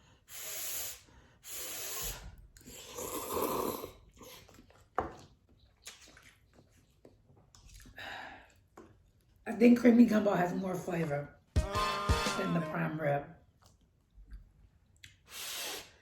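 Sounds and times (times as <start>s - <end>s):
person slurping noodles: 1.6s - 4.6s
chewing mouth sounds: 4.0s - 9.4s, 13.5s - 15.3s.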